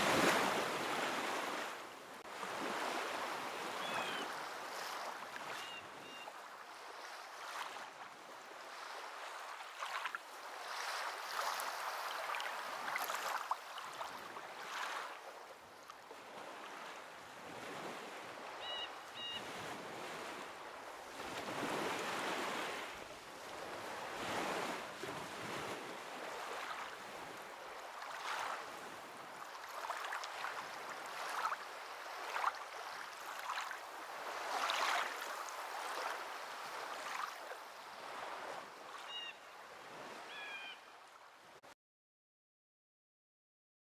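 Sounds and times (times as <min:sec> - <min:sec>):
water lapping: 0:00.0 - 0:01.7, 0:08.7 - 0:18.5, 0:19.7 - 0:39.0.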